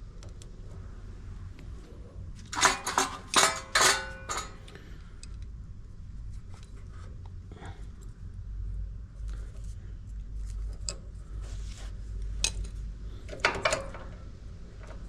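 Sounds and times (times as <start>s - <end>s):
small metal parts rattling: 2.5s - 4.8s.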